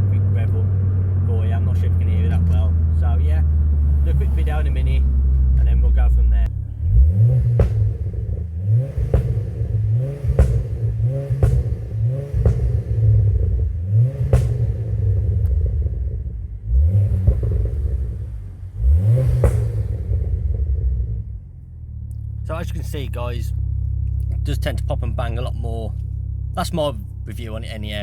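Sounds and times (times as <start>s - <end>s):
car engine revving: 0.0s - 28.0s
exhaust pops and bangs: 7.4s - 21.3s.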